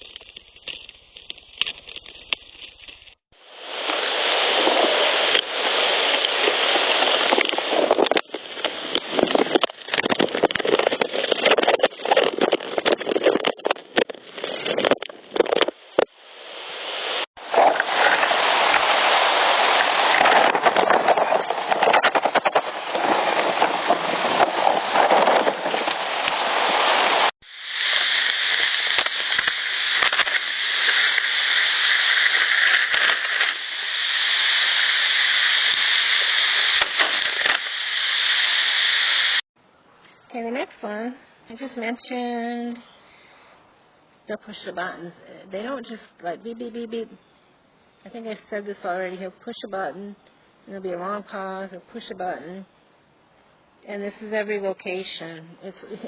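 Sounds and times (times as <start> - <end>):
recorder handling noise: 0.0 - 39.4.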